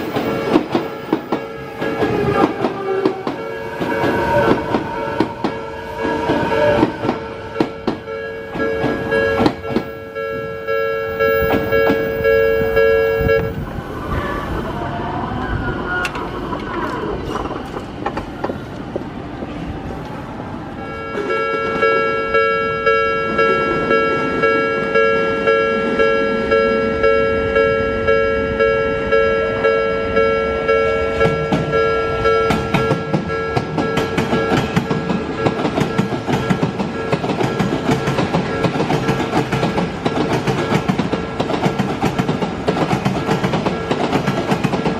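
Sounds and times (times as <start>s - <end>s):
train wheels clacking over rail joints: 0.0s - 10.0s, 32.5s - 44.9s
level crossing warning bell: 0.0s - 13.6s, 20.7s - 39.6s, 43.4s - 44.6s.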